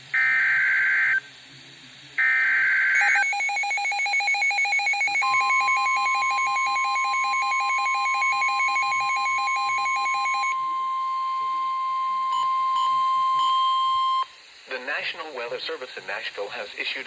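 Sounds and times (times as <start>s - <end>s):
harsh digital data bursts: 2.2s - 10.6s
fast-pulsing electronic beep alarm: 2.2s - 11.2s
steady warning tone: 2.2s - 14.4s.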